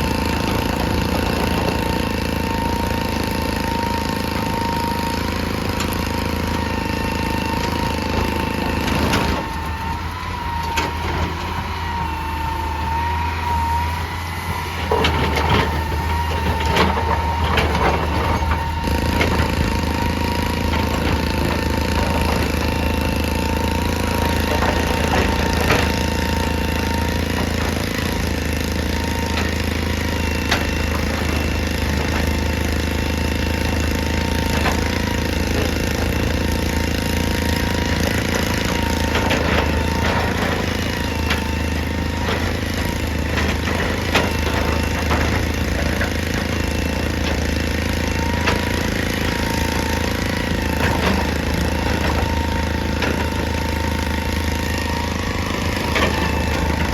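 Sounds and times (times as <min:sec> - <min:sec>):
excavator diesel engine running: 0:00.0 - 0:56.9
steady whine: 0:48.0 - 0:56.9.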